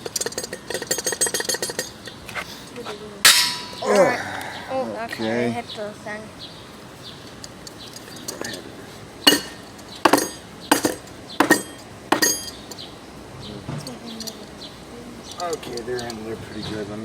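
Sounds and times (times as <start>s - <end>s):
metal tool clinking on metal: 0.0s - 2.2s, 3.3s - 3.8s, 7.9s - 12.8s.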